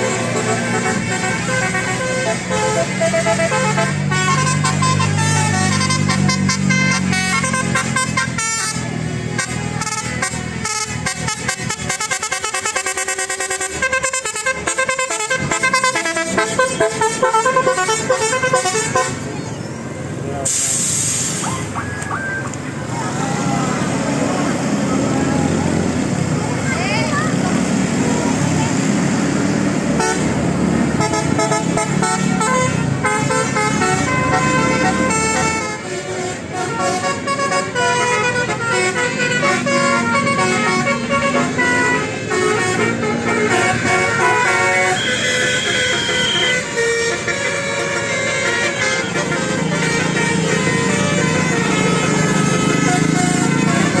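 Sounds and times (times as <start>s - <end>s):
multi-note musical air horn: 0.0s - 19.2s, 31.0s - 54.0s.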